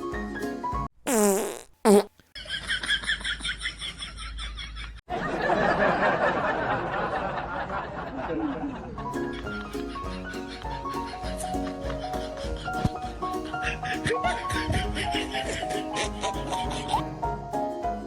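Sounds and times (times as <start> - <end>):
prank fart noises: 1.0 - 2.2.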